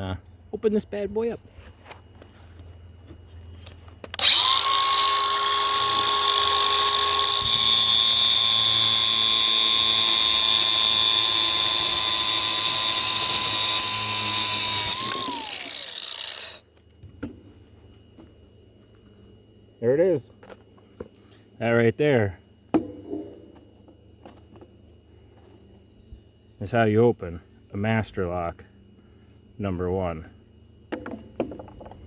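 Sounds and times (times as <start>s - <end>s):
power tool motor whine: 4.1s - 16.6s.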